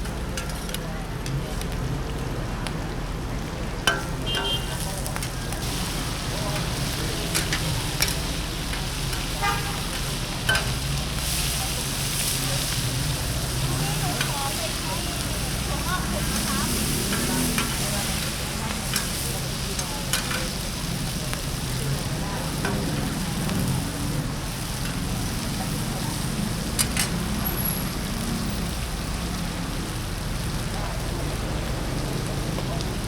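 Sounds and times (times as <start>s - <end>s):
food sizzling in a pan: 0.0s - 33.0s
metal spatula scraping a pan: 3.9s - 12.8s.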